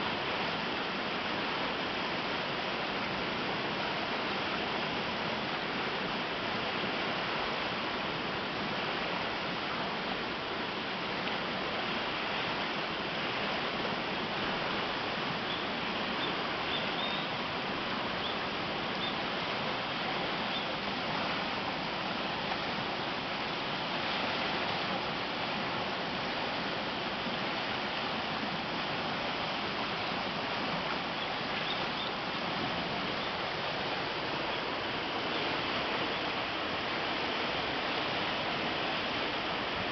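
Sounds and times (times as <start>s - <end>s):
stream water rushing: 0.0s - 39.9s
faint high chirps: 15.5s - 17.4s.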